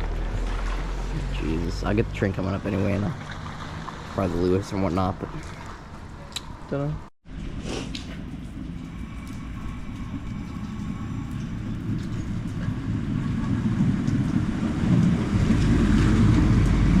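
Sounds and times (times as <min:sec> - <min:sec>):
train rumbling: 0:07.3 - 0:17.0.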